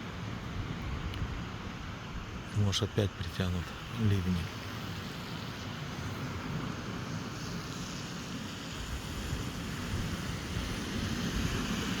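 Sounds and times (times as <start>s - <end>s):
sea surf: 0.0s - 12.0s
wind on microphone: 8.7s - 12.0s.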